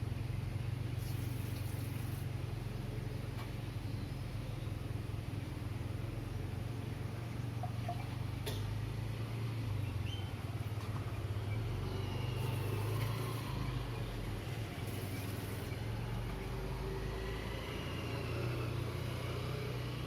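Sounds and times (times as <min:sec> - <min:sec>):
distant road traffic rumble: 0:00.0 - 0:20.0
faint bird chirps: 0:09.7 - 0:10.4.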